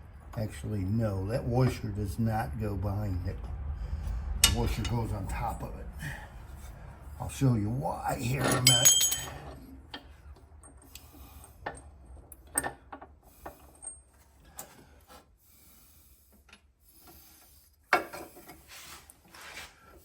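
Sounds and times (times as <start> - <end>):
small metal parts clicking and knocking: 8.5 - 9.4.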